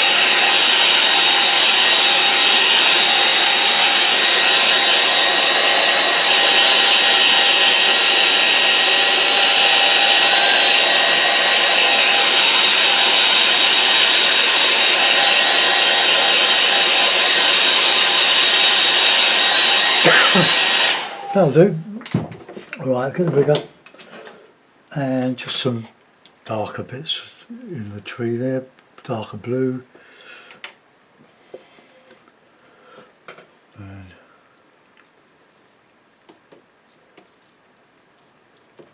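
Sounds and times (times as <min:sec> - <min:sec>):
hairdryer blowing: 0:00.0 - 0:22.2.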